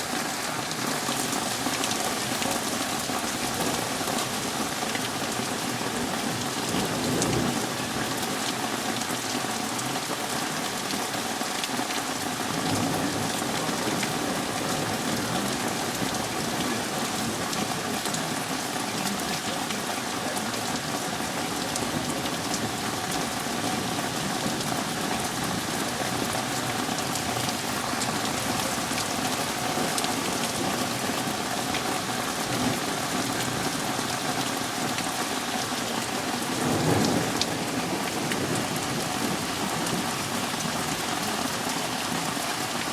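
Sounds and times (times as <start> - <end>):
heavy rain falling: 0.0 - 42.9
thunder rumbling: 36.0 - 41.1.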